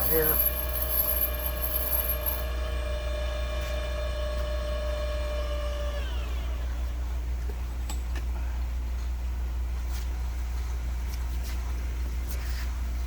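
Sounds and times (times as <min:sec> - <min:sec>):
grinder whining: 0:00.0 - 0:04.6
grinder coasting to a stop: 0:00.0 - 0:06.9.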